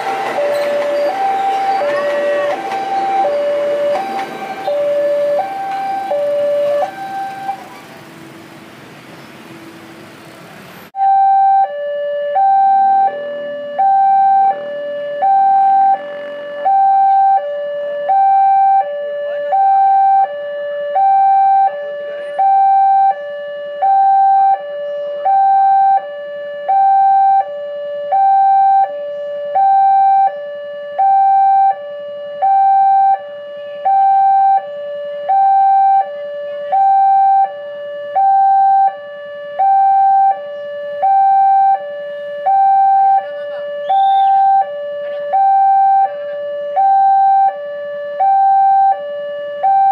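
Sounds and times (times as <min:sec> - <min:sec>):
level crossing two-tone alarm: 0:00.0 - 0:07.9, 0:11.0 - 0:49.9.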